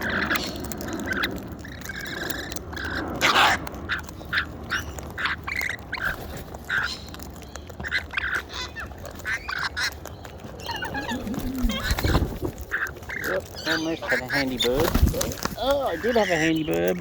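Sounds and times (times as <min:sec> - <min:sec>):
flock of birds calling: 0:00.0 - 0:17.0
harsh bird call: 0:10.6 - 0:16.9.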